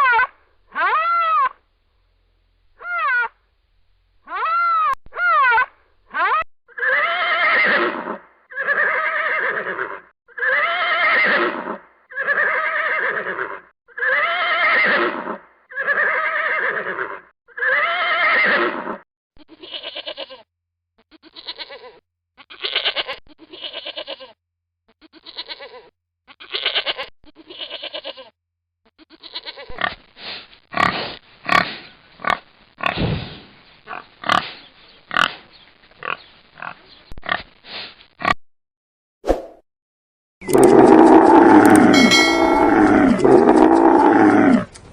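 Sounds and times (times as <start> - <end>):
animals calling: 40.4 - 44.7.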